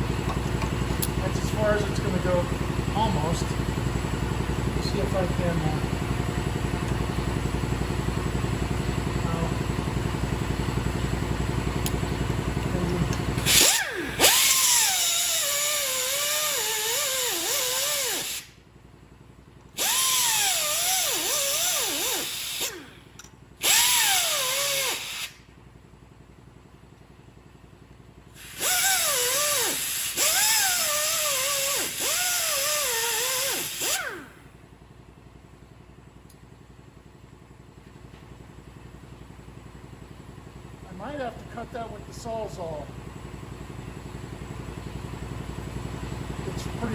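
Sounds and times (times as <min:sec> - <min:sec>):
steady low hum: 0:00.0 - 0:46.9
power tool grinding metal: 0:13.4 - 0:18.5, 0:28.4 - 0:34.2.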